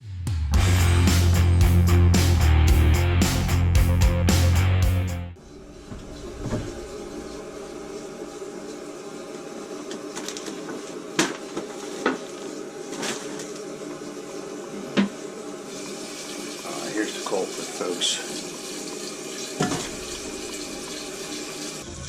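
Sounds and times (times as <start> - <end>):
toilet tank water running: 5.4 - 22.0.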